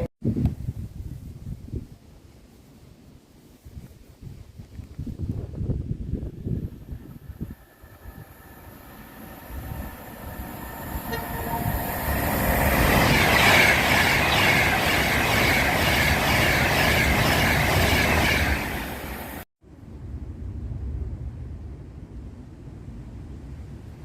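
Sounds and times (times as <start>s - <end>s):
train passing at speed: 5.8s - 19.5s.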